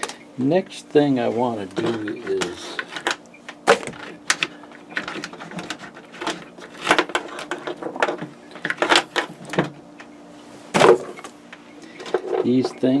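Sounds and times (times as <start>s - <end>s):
faint steady hum: 0.0s - 13.0s
small parts clicking and rustling: 1.7s - 10.1s, 11.0s - 12.8s.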